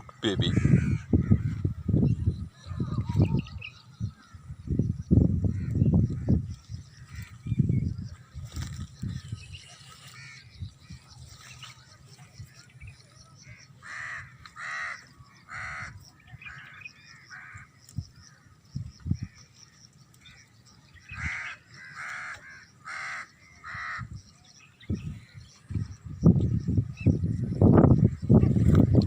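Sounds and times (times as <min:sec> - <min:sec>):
crow cawing: 0:00.4 - 0:01.5, 0:13.5 - 0:17.7, 0:21.0 - 0:24.1.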